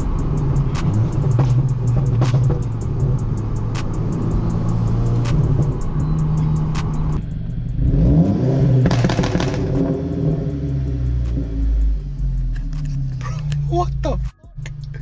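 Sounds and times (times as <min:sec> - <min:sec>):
sharp exhaust crackles: 0:00.0 - 0:11.3
car engine driving: 0:00.0 - 0:15.0.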